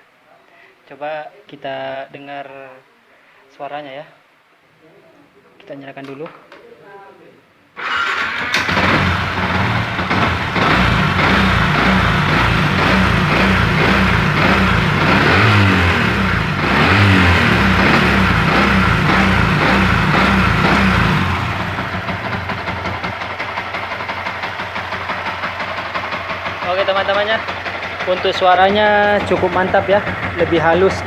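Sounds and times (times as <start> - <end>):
motorcycle engine revving and idling: 7.9 - 31.0.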